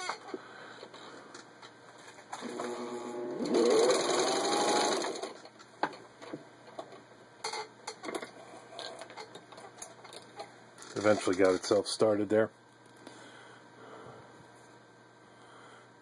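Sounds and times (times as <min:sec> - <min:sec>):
sewing machine motor whining: 0:02.4 - 0:05.4.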